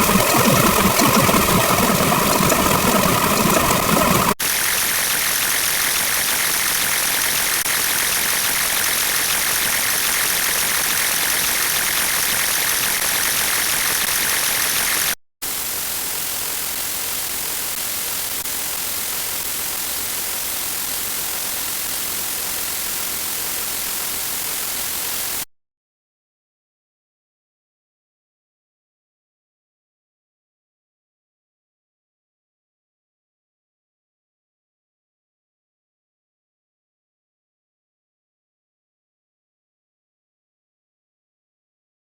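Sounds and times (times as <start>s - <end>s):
static-like hiss: 14.3s - 25.4s.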